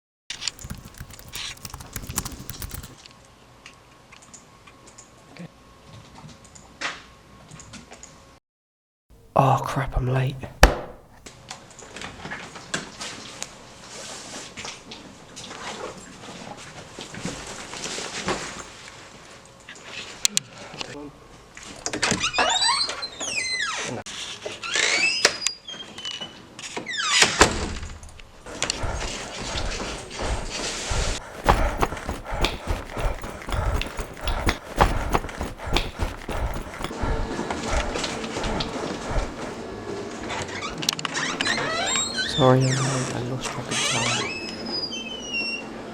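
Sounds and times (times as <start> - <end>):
rapid light clicks: 0.4 - 3.0
short rustle: 28.5 - 39.6.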